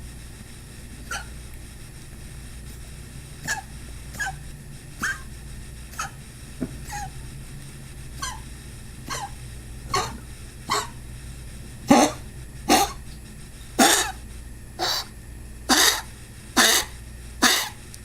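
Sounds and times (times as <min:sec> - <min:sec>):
pet coughing: 0:01.1 - 0:01.4, 0:03.4 - 0:04.4, 0:05.0 - 0:05.3, 0:05.9 - 0:06.2, 0:06.8 - 0:07.2, 0:08.2 - 0:08.4, 0:09.0 - 0:11.0, 0:11.8 - 0:13.1, 0:13.8 - 0:14.2, 0:14.8 - 0:17.8.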